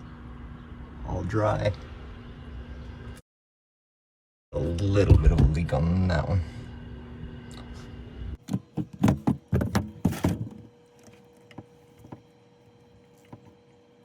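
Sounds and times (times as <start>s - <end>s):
knocks and clunks: 5.0s - 5.7s, 8.4s - 10.8s.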